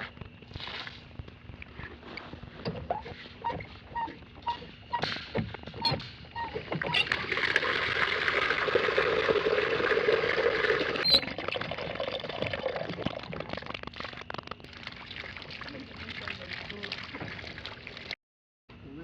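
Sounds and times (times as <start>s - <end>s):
water pouring into a tank: 6.6s - 18.2s.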